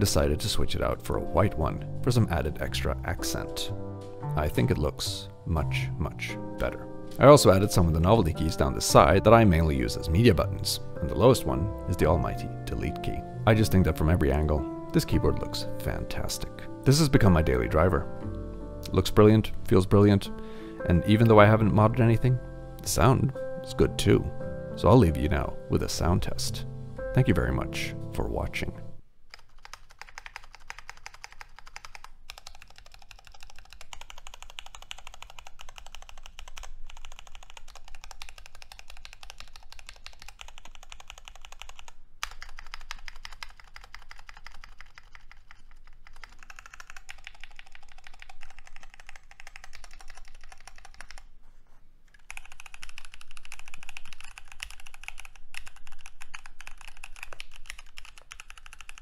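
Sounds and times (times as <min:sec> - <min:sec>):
mechanical keyboard typing: 0:29.3 - 0:51.2, 0:52.2 - 0:59.0.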